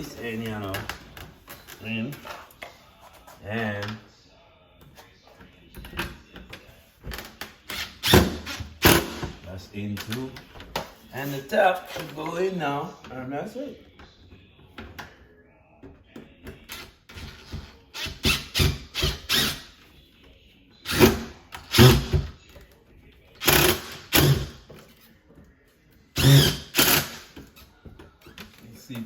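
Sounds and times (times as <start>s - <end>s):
cordless drill driving screws: 18.0s - 19.7s, 20.9s - 22.2s, 23.4s - 24.6s, 26.2s - 27.3s.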